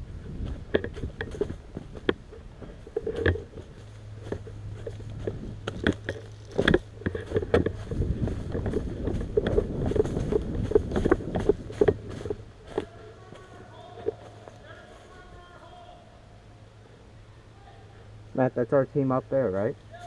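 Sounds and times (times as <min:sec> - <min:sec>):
footsteps crunching on dry ground: 0:00.0 - 0:16.0
low steady hum: 0:00.0 - 0:20.0
gear rattling and knocking: 0:00.4 - 0:13.0.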